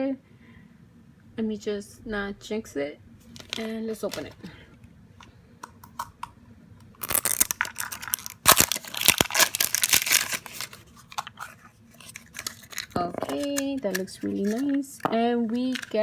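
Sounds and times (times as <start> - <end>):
foil bag tearing and crinkling: 7.0 - 13.0.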